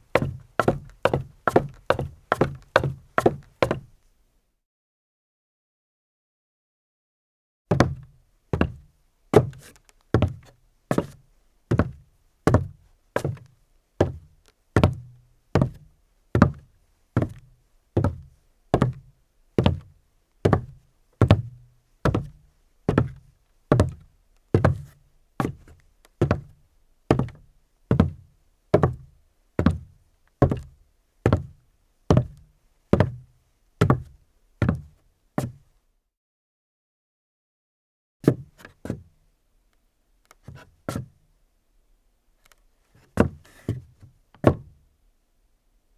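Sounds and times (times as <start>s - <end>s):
heavy footsteps in rubber boots: 0.1s - 3.9s.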